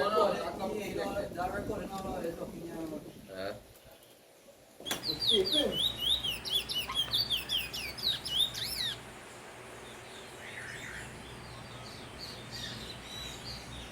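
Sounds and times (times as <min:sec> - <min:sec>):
finch singing whistled notes: 0:04.8 - 0:09.0.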